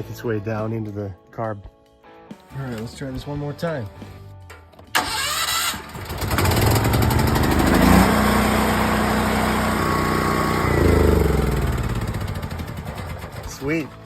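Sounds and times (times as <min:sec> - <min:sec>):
electric starter cranking: 0:04.9 - 0:13.7
generator engine running: 0:05.0 - 0:14.0.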